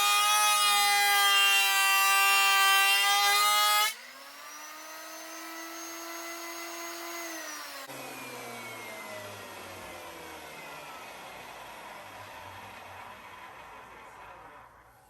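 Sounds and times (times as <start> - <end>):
planer motor whine: 3.9 - 15.0.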